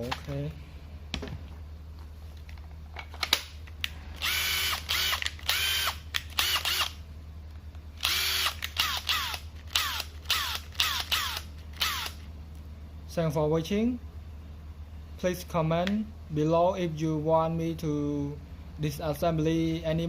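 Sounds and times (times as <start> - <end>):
impact wrench motor whine: 4.1 - 7.0, 8.0 - 12.2.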